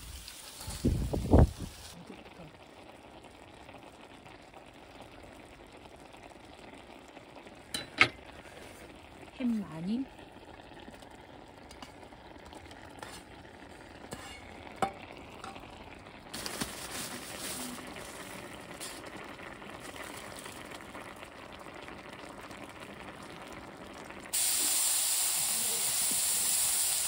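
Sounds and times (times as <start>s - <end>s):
food sizzling in a pan: 0.0s - 27.0s
loud hiss: 24.3s - 27.0s.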